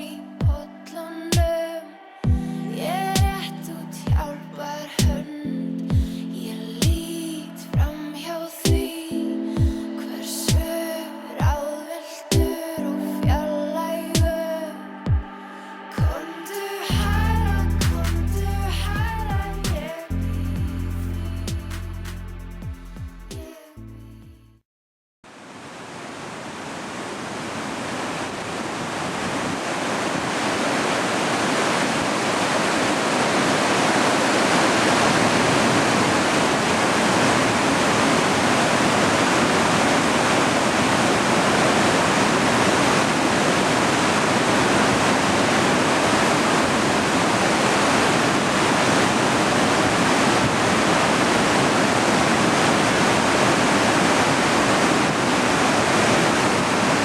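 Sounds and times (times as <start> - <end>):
roar of large waterfall: 25.3 - 57.0.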